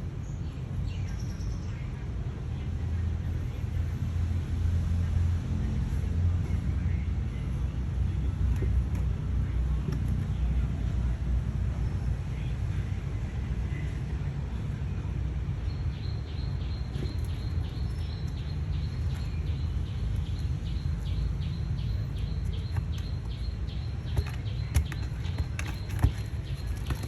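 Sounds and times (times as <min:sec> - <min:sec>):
small bird chirping: 0:15.6 - 0:27.0.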